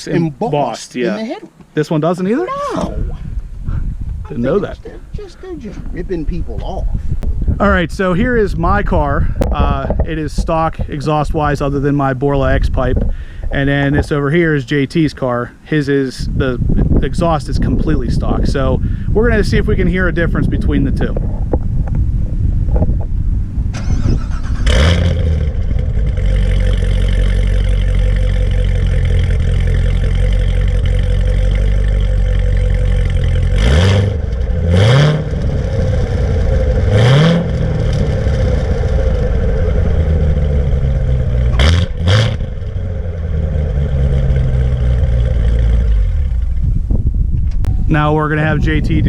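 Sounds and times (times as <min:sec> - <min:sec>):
car engine starting and idling: 0:23.7 - 0:48.8
car engine revving: 0:23.8 - 0:46.6.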